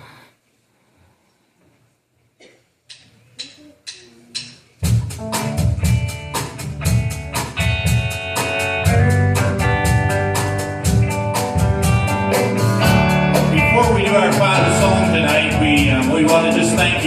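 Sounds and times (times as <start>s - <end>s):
drumstick taps counting in: 2.9s - 4.7s
live band playing upbeat song: 4.8s - 17.0s.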